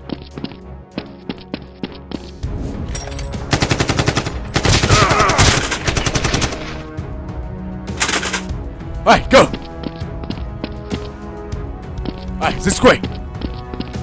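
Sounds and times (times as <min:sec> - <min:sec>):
rapid automatic gunfire: 0:03.5 - 0:06.8, 0:08.0 - 0:08.6.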